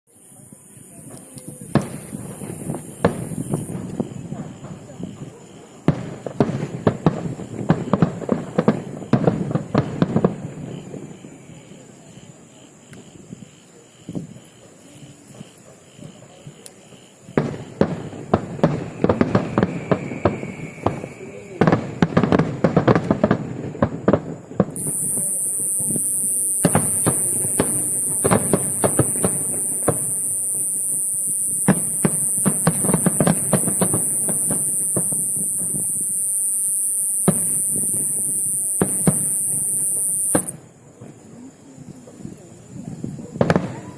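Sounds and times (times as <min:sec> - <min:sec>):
high-pitched hiss: 0:00.1 - 0:04.2, 0:24.7 - 0:40.6
fireworks rumble: 0:00.1 - 0:12.5, 0:13.1 - 0:43.9
fireworks cracking and banging: 0:01.0 - 0:11.1, 0:17.4 - 0:41.2, 0:43.3 - 0:43.9.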